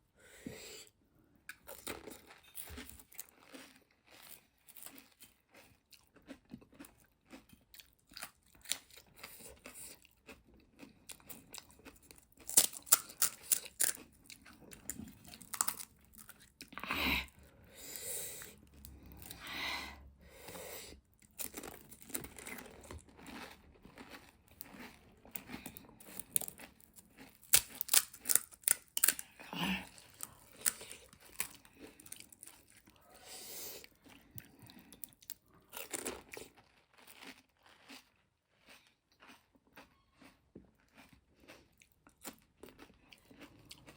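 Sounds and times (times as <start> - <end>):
chewing and mouth noises: 1.5 - 19.4, 21.2 - 33.2, 33.8 - 43.9
crisp shells crunching: 26.1 - 29.3.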